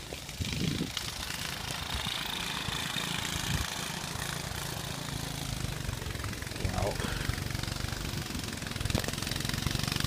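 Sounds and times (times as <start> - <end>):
wind rumble on microphone: 0.0 - 4.0
engine running steadily: 0.0 - 10.0.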